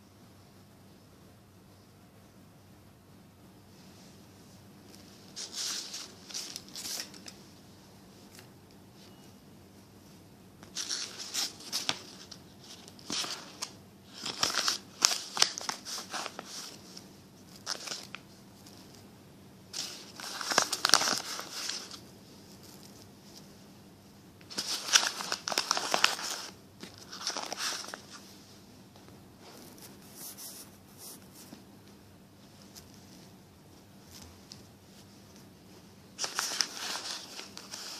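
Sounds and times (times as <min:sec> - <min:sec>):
paper crumpling: 0:05.3 - 0:07.4, 0:10.6 - 0:18.9, 0:19.7 - 0:22.0, 0:24.5 - 0:28.3, 0:36.2 - 0:37.9.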